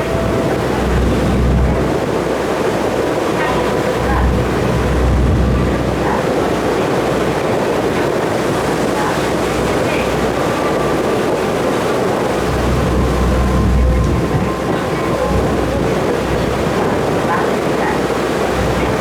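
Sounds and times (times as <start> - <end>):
low rumble: 0.0 - 2.4
ferry engine: 0.0 - 19.0
rushing water: 0.0 - 19.0.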